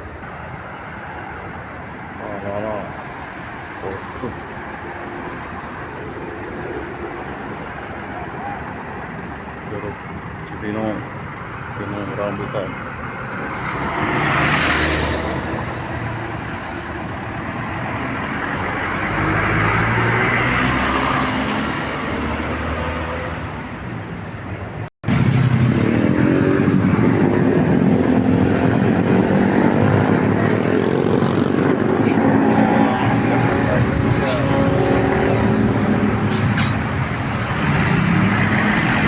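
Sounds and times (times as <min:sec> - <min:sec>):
road traffic: 0:00.0 - 0:39.0
heavy vehicle pulling away: 0:25.1 - 0:39.0.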